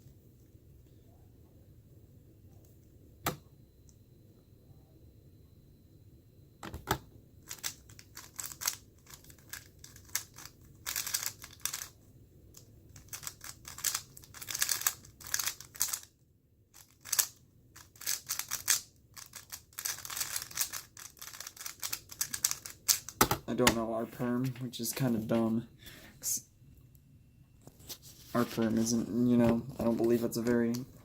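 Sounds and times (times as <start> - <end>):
plastic puzzle cube clicking: 7.5 - 11.9, 13.0 - 16.0, 16.8 - 23.2.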